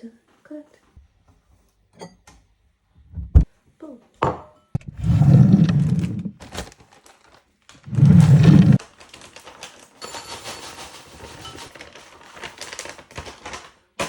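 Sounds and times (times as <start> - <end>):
box of cereal shaking: 5.3 - 13.8.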